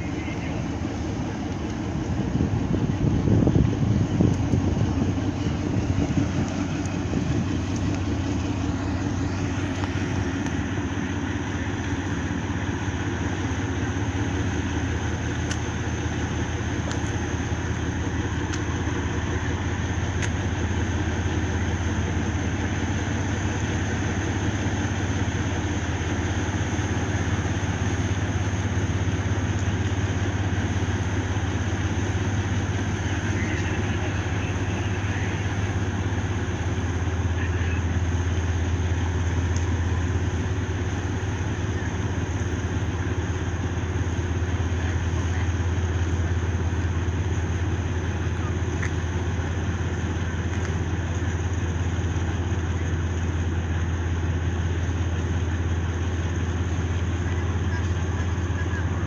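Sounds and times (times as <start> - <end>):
ship engine droning: 0.0 - 59.0
faint clicks: 48.7 - 49.1.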